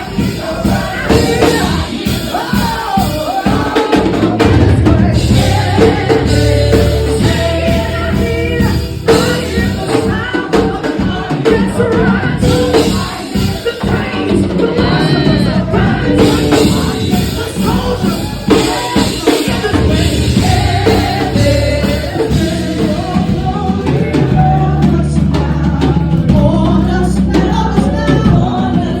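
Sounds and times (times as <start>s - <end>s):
drum kit: 0.0s - 29.0s
people singing worship music: 0.0s - 29.0s
held bass notes: 4.8s - 9.9s, 19.5s - 29.0s.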